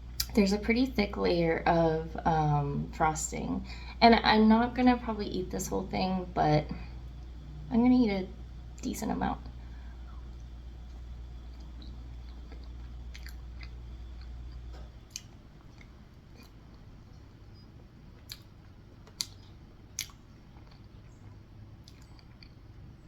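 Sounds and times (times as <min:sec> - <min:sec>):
low hum: 0:00.0 - 0:23.0
chewing soft cake: 0:09.4 - 0:23.0.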